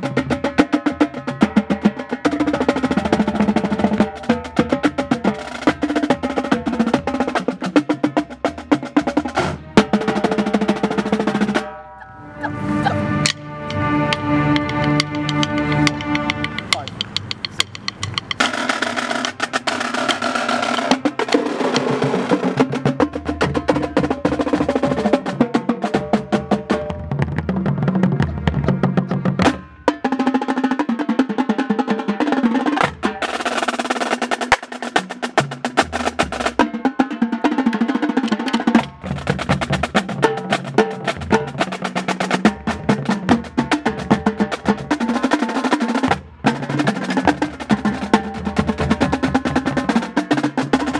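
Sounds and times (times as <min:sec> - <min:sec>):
drumline playing snare and bass drums: 0:00.0 - 0:11.8, 0:13.1 - 0:50.9
horns sustaining chords: 0:09.4 - 0:17.6.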